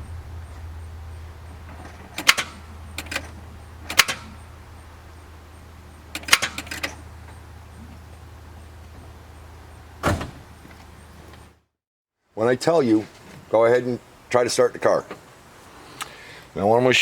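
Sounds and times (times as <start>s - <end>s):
steady low hum: 0.0s - 10.0s
sharp clicks and light rattles: 0.5s - 4.9s, 6.1s - 7.4s.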